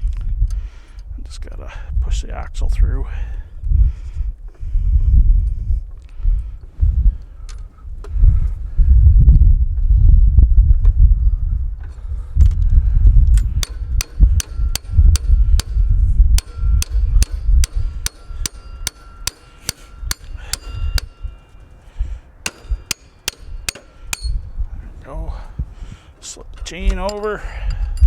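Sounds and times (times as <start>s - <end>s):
low rumble: 7.9s - 19.3s
hammer striking metal axle: 13.3s - 21.7s, 22.4s - 24.6s, 26.8s - 28.0s.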